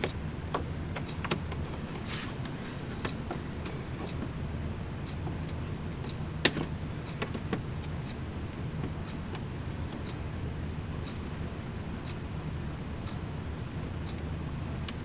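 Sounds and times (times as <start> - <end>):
low workshop hum: 0.0 - 15.0.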